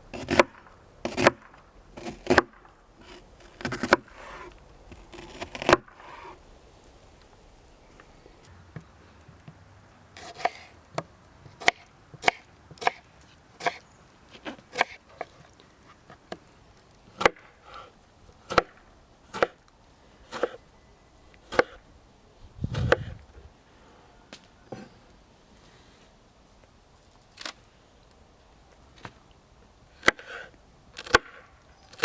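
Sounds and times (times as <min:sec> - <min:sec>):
blade chopping wood: 0:08.5 - 0:16.6.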